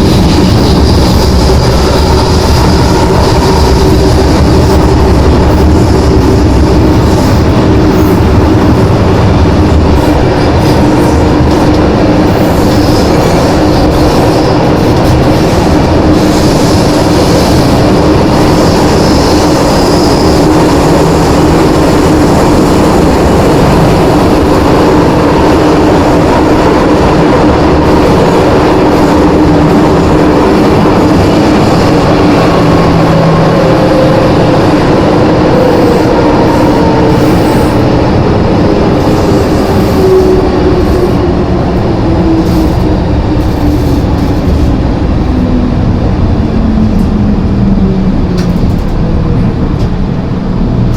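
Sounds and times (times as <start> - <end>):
train rail and running noise: 0.0 - 50.9
train traction motor whine: 0.0 - 50.9.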